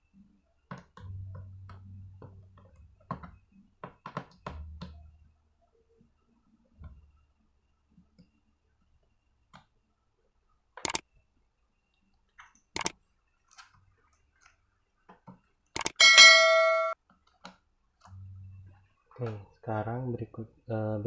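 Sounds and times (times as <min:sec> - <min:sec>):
metal object knocking and ringing: 0:16.0 - 0:17.0.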